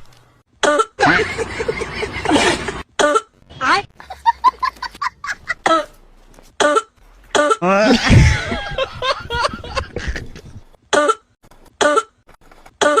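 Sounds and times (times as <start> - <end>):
person coughing: 7.4 - 8.6.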